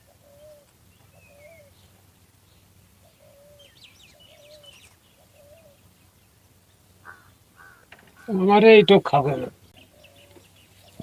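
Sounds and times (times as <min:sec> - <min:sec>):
dove cooing: 0:00.0 - 0:01.8, 0:03.0 - 0:05.9, 0:07.0 - 0:08.4, 0:09.9 - 0:11.0
small bird chirping: 0:00.0 - 0:11.0.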